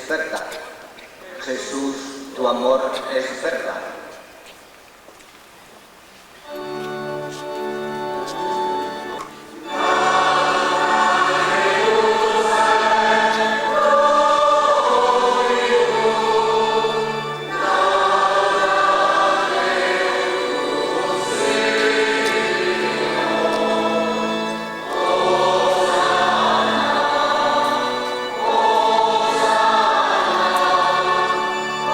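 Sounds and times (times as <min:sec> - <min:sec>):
low sustained accompaniment: 0:06.5 - 0:31.9
choir chanting: 0:09.6 - 0:31.9.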